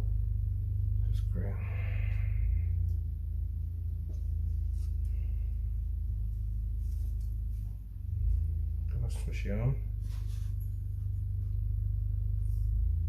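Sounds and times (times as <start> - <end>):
low electrical hum: 0.0 - 13.0.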